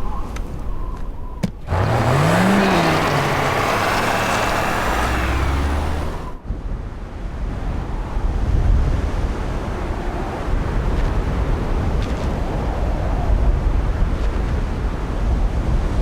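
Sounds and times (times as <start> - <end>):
road noise: 1.4 - 6.4
car engine passing: 1.6 - 6.4.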